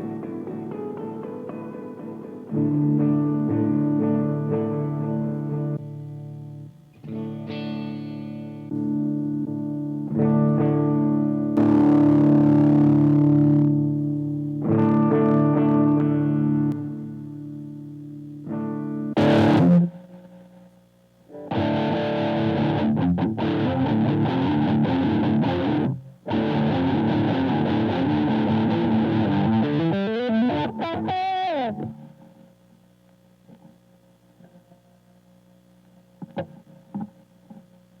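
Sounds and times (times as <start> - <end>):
distorted electric guitar: 0.0 - 20.7, 21.3 - 32.5, 36.0 - 37.8.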